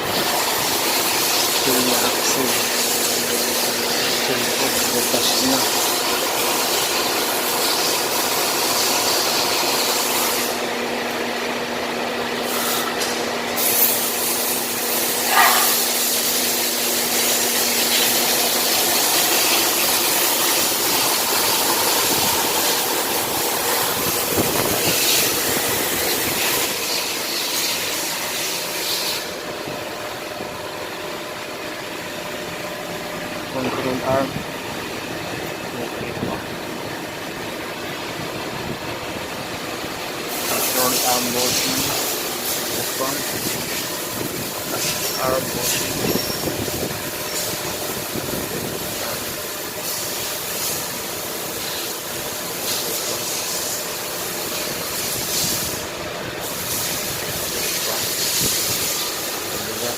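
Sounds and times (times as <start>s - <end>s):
mechanical running noise: 0.0s - 59.9s
hiss: 13.6s - 24.0s, 44.7s - 59.8s.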